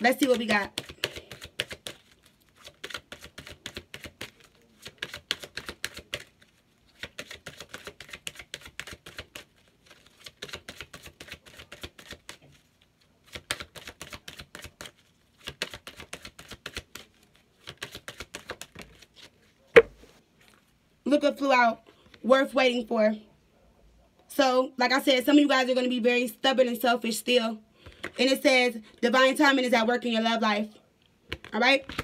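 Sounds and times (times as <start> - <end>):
cards being shuffled: 0.0 - 20.7, 31.3 - 32.0.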